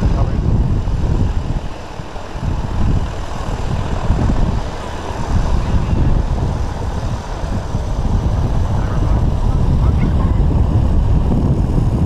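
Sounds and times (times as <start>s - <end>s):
propeller plane engine passing: 0.0s - 12.0s.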